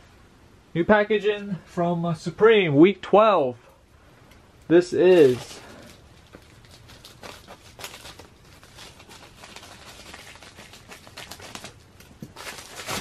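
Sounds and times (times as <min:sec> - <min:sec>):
packaging clicks and rustling: 0:05.1 - 0:13.0.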